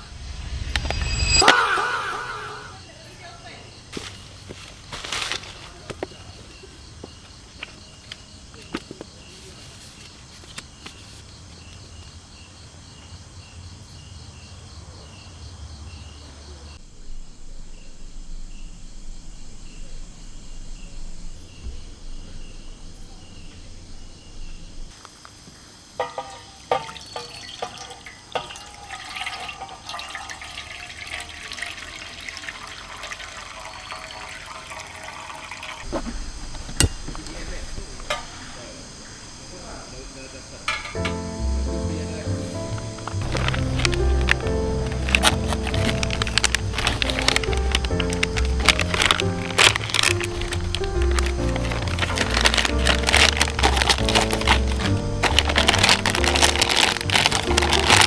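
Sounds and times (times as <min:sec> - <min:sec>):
pulsing insect chirp: 0:00.0 - 0:28.6, 0:35.8 - 0:57.8
water sloshing and pouring: 0:26.0 - 0:37.2, 0:42.5 - 0:58.0.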